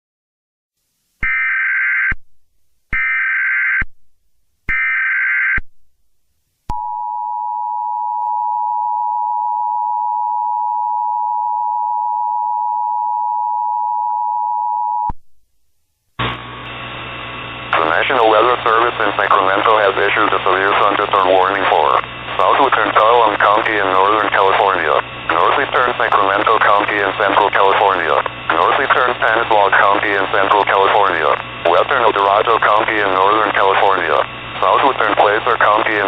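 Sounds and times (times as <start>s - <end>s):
steady attention tone: 16.2s - 36.0s.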